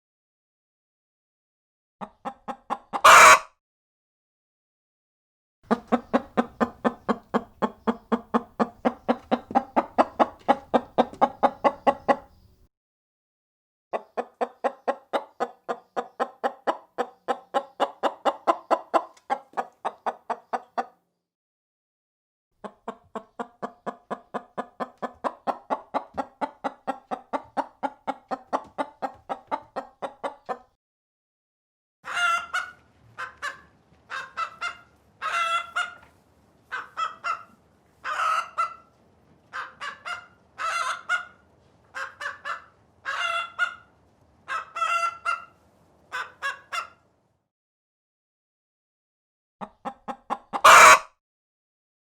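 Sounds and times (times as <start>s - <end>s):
chicken clucking: 2.0s - 3.5s, 5.7s - 12.6s, 13.9s - 21.0s, 22.6s - 30.7s, 32.0s - 47.0s, 49.6s - 51.1s
chicken high calls: 2.9s - 3.5s, 32.0s - 36.1s, 36.7s - 38.9s, 39.5s - 41.4s, 42.0s - 43.9s, 44.5s - 47.0s, 50.5s - 51.1s.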